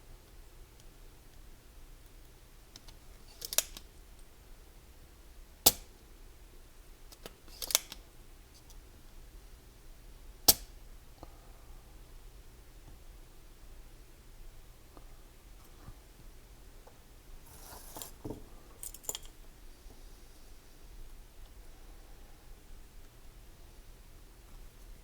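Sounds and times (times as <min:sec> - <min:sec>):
solder sucker sharp snap: 0:05.7 - 0:05.9, 0:10.5 - 0:10.7.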